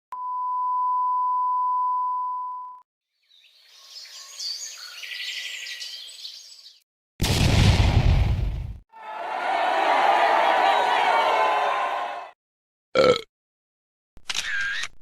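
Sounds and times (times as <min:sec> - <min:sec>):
birds chirping and twittering: 0:03.2 - 0:06.8
loud sudden burst of noise: 0:07.2 - 0:08.8.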